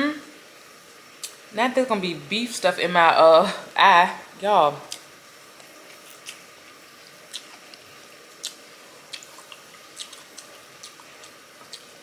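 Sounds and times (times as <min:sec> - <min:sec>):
person chewing food: 0:04.9 - 0:12.0.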